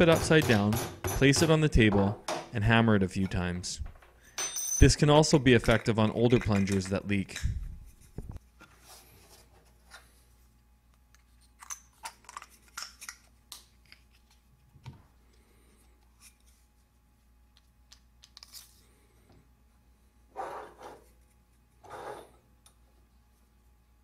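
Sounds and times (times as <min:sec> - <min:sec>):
small parts clicking and rustling: 0:11.1 - 0:14.4.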